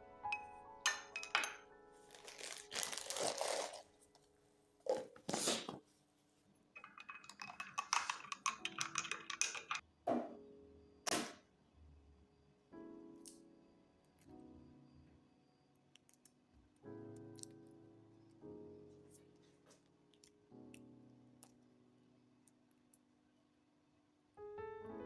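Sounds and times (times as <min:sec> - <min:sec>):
soft piano music: 0:00.0 - 0:04.8, 0:08.5 - 0:25.0
objects clattering: 0:00.9 - 0:03.9, 0:06.8 - 0:10.4
rustling and crinkling: 0:02.0 - 0:06.6
sharp clicks and knocks: 0:06.8 - 0:09.8.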